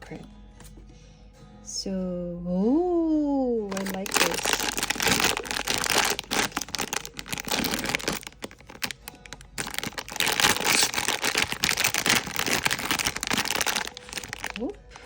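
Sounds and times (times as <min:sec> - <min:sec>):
plastic packaging crinkling: 0:03.7 - 0:15.0.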